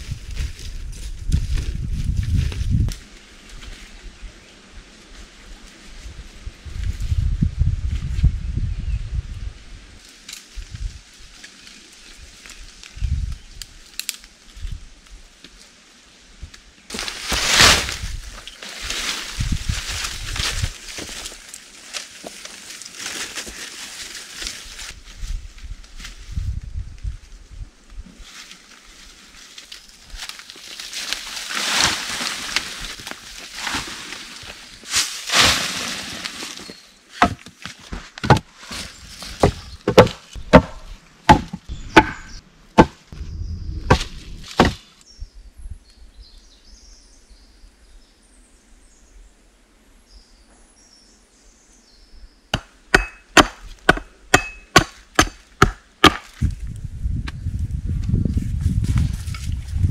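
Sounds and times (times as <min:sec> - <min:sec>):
rustling: 0:28.1 - 0:41.0
axe chopping wood: 0:37.2 - 0:38.5, 0:39.4 - 0:43.0, 0:43.9 - 0:44.8, 0:52.5 - 0:56.4.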